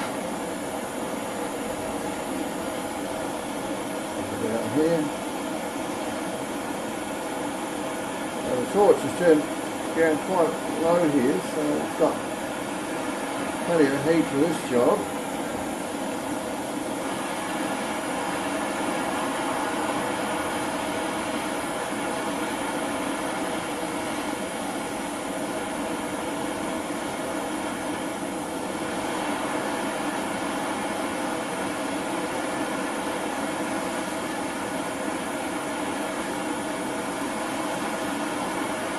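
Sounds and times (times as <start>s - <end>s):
blowtorch flame burning: 0.0s - 38.9s.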